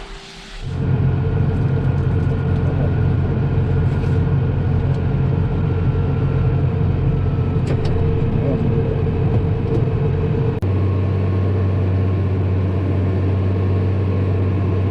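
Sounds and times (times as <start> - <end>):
combine harvester engine drone: 0.0 - 14.9
steady machine whine: 0.0 - 14.9.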